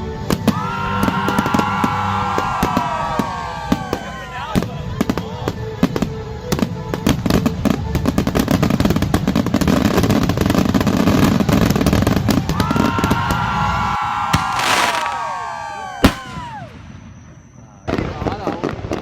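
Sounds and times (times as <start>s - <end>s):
whistling fireworks: 0.1s - 19.0s
fireworks crackling pops: 14.3s - 18.4s.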